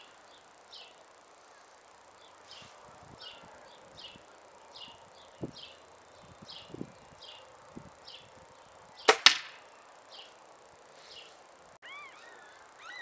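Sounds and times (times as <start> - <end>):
air rifle shot crack: 9.1 - 9.6.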